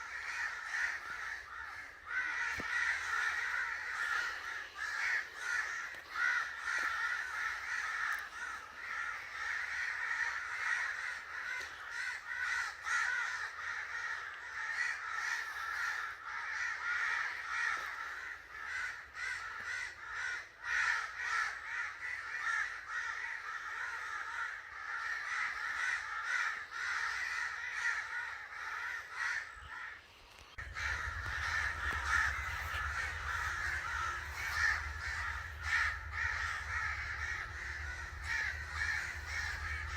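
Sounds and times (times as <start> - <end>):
crows cawing: 0.0 - 39.9
low rumble: 30.6 - 39.9.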